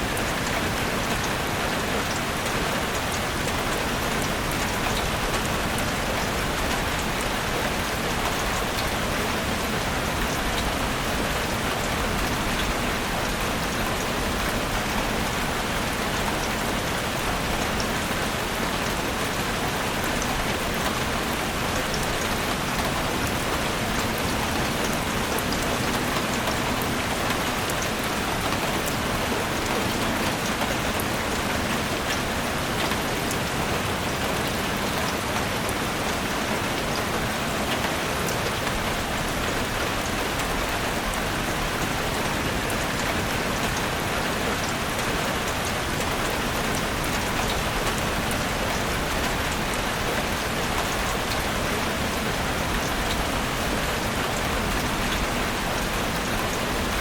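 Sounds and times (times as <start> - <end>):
heavy rain on foliage: 0.0 - 57.0.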